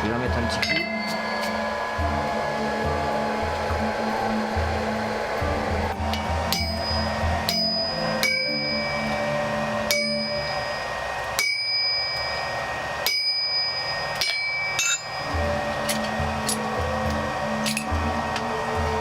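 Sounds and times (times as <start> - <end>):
hammer striking blade on anvil: 0.6 - 1.7, 6.1 - 9.1, 9.9 - 10.8, 11.4 - 16.7.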